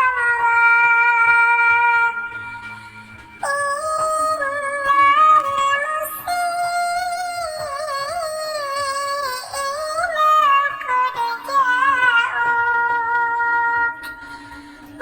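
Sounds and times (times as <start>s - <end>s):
high-pitched voice singing: 3.4s - 14.2s.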